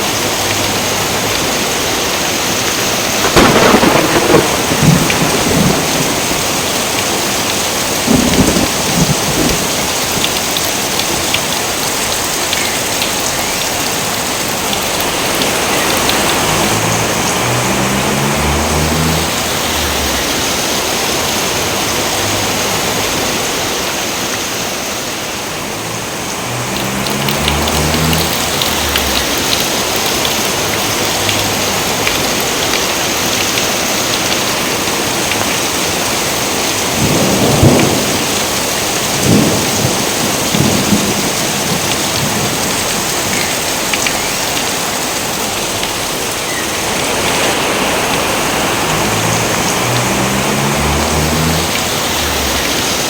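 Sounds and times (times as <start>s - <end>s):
heavy rain: 0.0s - 53.0s
thunder claps: 3.2s - 11.6s, 14.6s - 23.0s, 26.6s - 32.9s, 36.7s - 43.4s.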